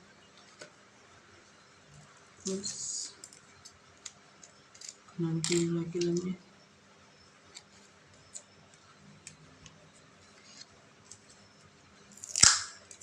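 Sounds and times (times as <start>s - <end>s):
loud sharp snap: 12.4s - 12.8s.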